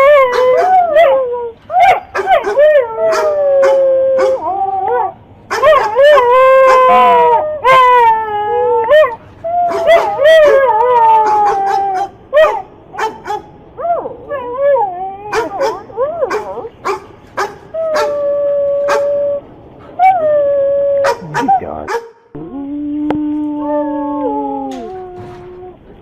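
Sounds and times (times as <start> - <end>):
dog yelping: 0.0 - 8.2, 8.8 - 19.4, 21.0 - 22.2
dog howling and whining: 0.0 - 26.0.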